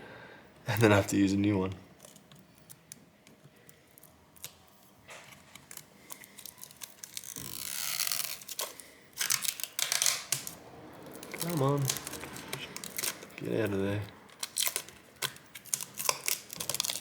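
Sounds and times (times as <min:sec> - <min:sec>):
plastic film being peeled: 0:02.0 - 0:17.0.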